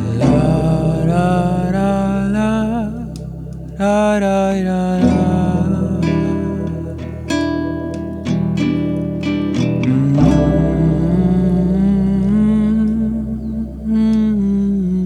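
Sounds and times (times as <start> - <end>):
guitar strums: 0.0 - 14.5
acoustic folk guitar music: 0.0 - 15.0.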